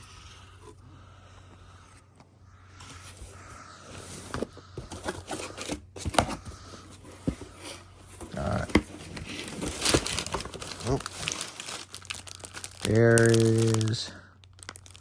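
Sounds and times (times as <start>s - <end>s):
cardboard and plastic packaging clicks: 7.2s - 15.0s.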